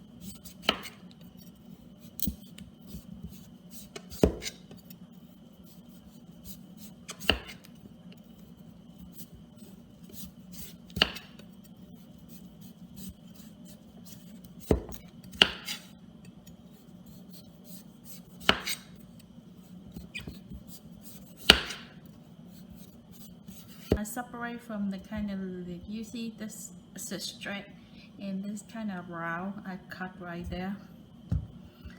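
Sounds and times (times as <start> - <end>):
steady low hum: 0.0 - 31.9
knife knocking on cutting board: 31.3 - 31.6.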